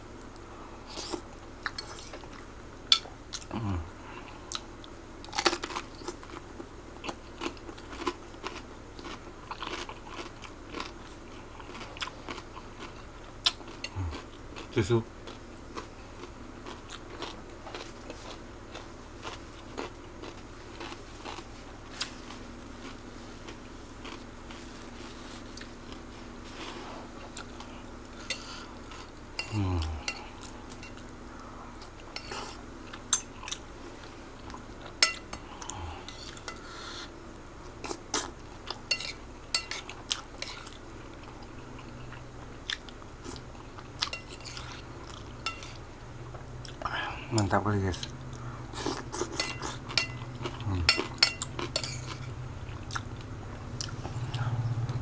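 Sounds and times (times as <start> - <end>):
chewing: 7.0 - 31.1, 37.6 - 55.0.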